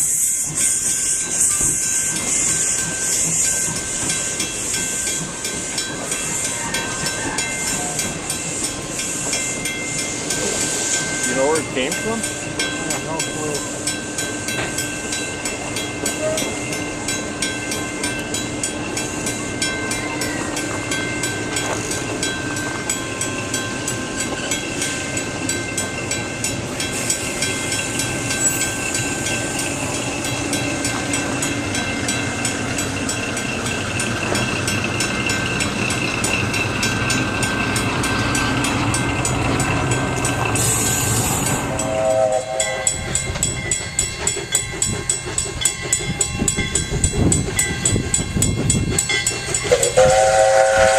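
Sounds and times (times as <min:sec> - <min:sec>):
steam hiss: 0:00.0 - 0:50.9
steam locomotive clatter: 0:00.0 - 0:50.9
locomotive whistle: 0:40.6 - 0:44.0, 0:49.7 - 0:50.9.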